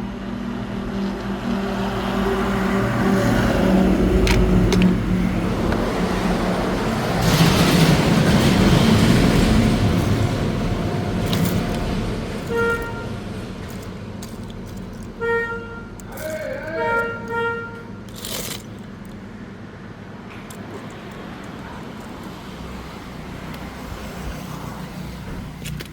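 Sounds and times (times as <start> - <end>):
vehicle engine running: 0.1 - 25.9
car horn toots: 12.4 - 13.9, 15.2 - 18.2.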